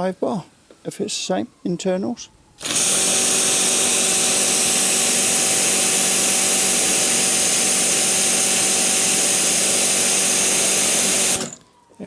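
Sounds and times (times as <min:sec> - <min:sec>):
pressure washer water jet hissing: 0:02.6 - 0:11.6
pump motor humming: 0:02.6 - 0:11.8.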